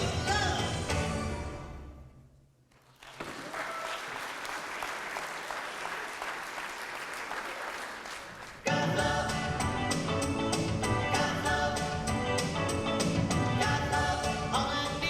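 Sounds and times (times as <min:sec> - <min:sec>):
music: 0:00.0 - 0:02.4, 0:08.7 - 0:15.0
congregation applauding: 0:02.7 - 0:08.7.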